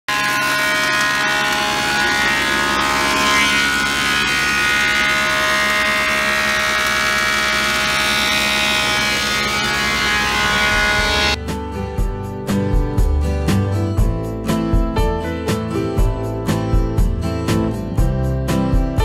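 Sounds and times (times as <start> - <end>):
motor buzzing whine: 0.1 - 11.4.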